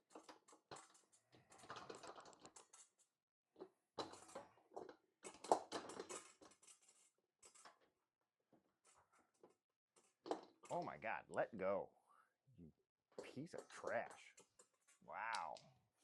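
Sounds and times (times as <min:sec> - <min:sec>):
metal clicks taps and scrapes: 0:13.2 - 0:15.6.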